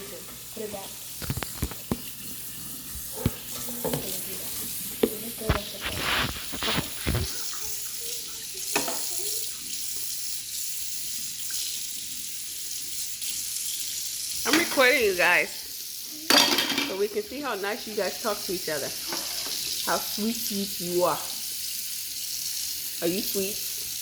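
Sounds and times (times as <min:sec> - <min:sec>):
kitchen knocks and clinks: 0:03.0 - 0:05.8, 0:08.7 - 0:09.2, 0:14.5 - 0:15.0, 0:16.3 - 0:17.1.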